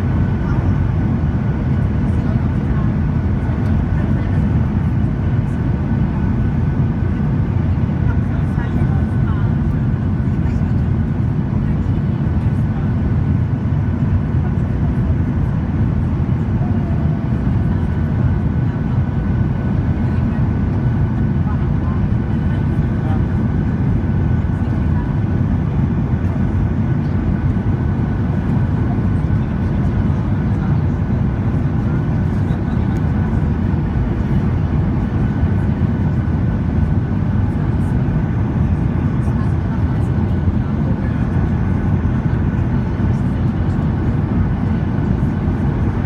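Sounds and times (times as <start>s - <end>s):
airliner cabin rumble: 0.0s - 46.0s.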